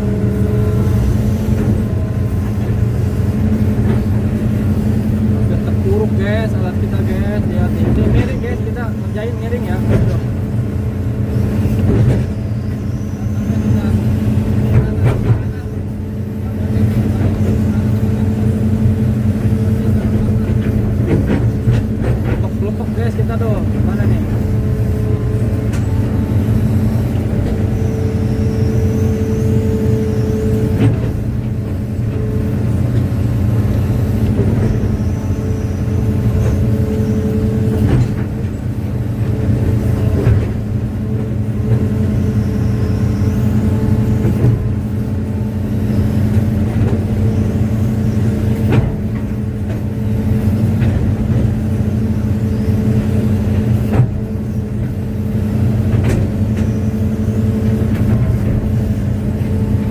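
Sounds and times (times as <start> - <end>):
excavator diesel engine running: 0.0 - 59.9
hydraulic whine: 0.0 - 59.9
faint high wavering squeal: 12.2 - 14.4, 24.8 - 30.8, 34.7 - 37.7, 41.4 - 44.2.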